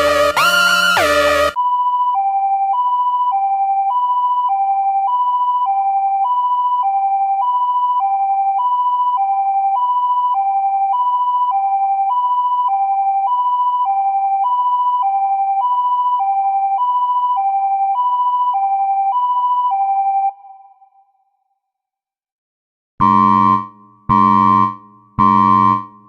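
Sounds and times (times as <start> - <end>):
hi-lo two-tone alarm: 0.0 - 2.4, 23.0 - 26.0.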